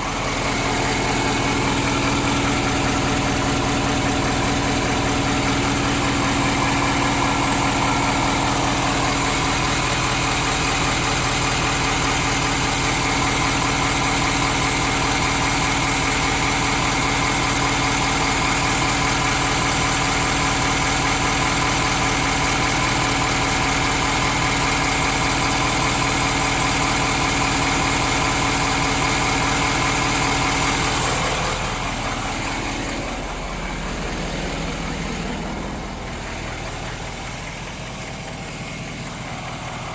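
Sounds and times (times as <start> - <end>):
diesel engine idling: 0.0 - 39.9
engine knock: 0.0 - 39.9.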